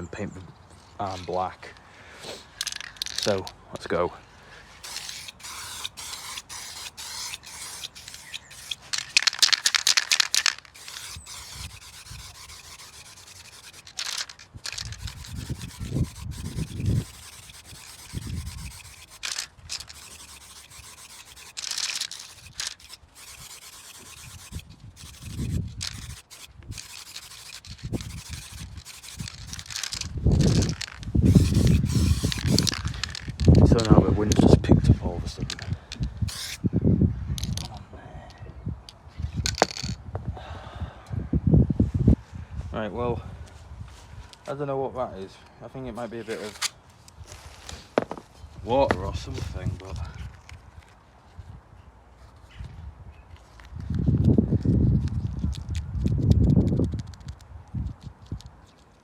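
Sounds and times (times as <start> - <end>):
aerosol can spraying: 4.8 - 33.3, 36.3 - 36.6
wind rumbling on microphone: 14.5 - 19.9, 24.2 - 26.9, 27.7 - 44.3, 52.5 - 58.7.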